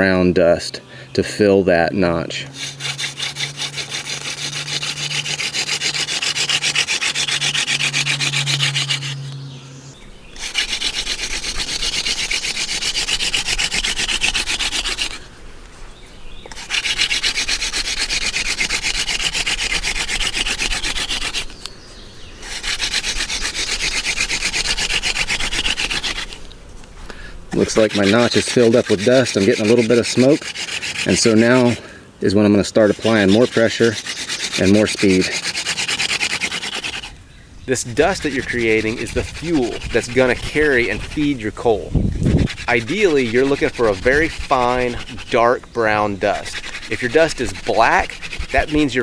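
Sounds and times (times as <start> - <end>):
hand drill grinding wood: 2.3 - 9.4, 10.3 - 15.4, 16.4 - 21.7, 22.3 - 49.0.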